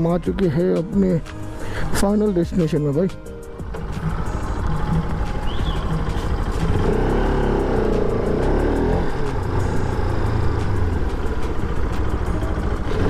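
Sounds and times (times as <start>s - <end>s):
road noise: 0.0s - 13.0s
motorcycle engine running: 0.3s - 13.0s
pitched engine sound: 3.6s - 13.0s.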